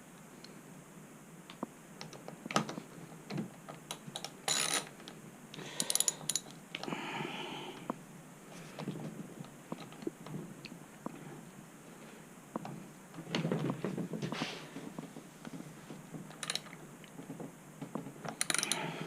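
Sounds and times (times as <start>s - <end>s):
hand tools clicking on metal parts: 5.7s - 6.9s, 18.3s - 19.0s.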